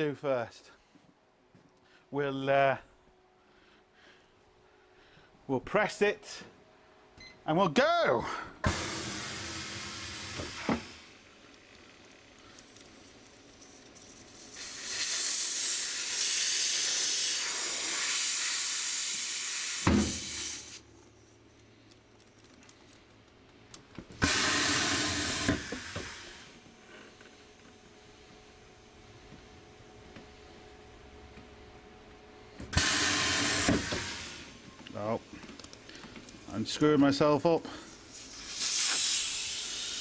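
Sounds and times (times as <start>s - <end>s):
compressed air hissing: 8.6s - 20.9s, 24.2s - 28.5s, 32.6s - 40.0s.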